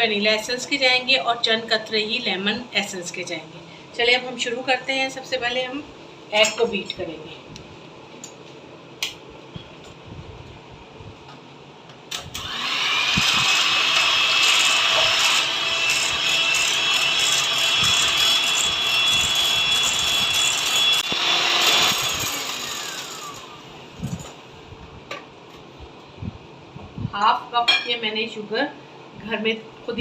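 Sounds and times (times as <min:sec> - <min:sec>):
electric mixer whining: 0:12.3 - 0:23.9.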